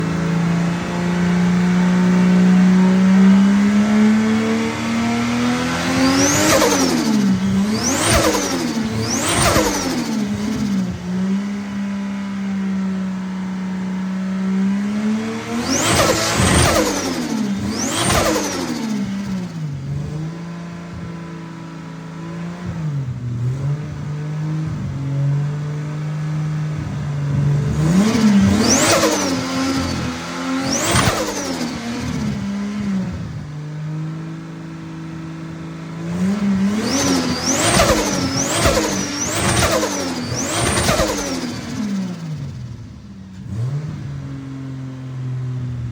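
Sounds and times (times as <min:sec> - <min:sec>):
car engine revving: 0:00.0 - 0:45.9
turbo whistle and flutter: 0:06.0 - 0:10.8, 0:36.8 - 0:42.1.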